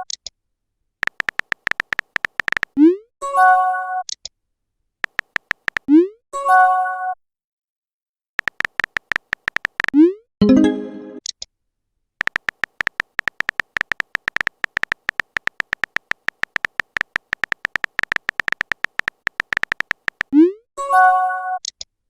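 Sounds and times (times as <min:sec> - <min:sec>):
phone keyboard typing clicks: 0:01.0 - 0:02.8, 0:05.0 - 0:05.9, 0:08.4 - 0:10.0, 0:12.2 - 0:20.4.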